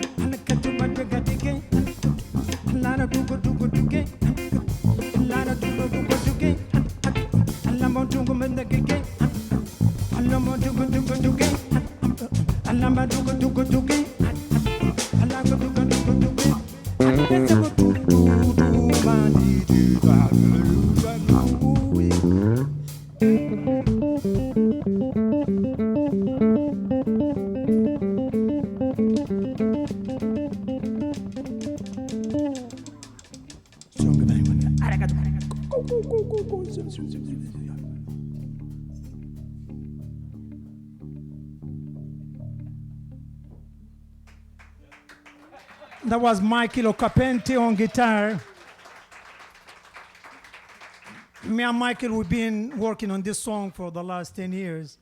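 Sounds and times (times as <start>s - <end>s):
electric bass: 0.0s - 32.8s, 34.0s - 44.9s
drum kit beat: 0.0s - 40.2s
electric guitar: 0.0s - 45.6s.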